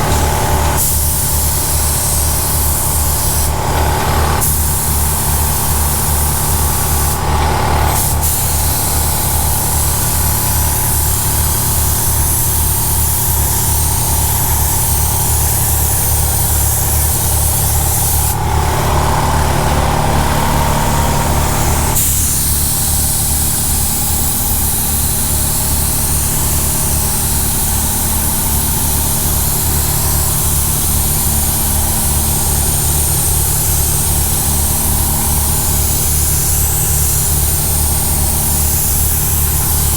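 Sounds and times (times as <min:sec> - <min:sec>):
paint spray gun hissing: 0:00.0 - 0:19.8, 0:21.5 - 0:39.9.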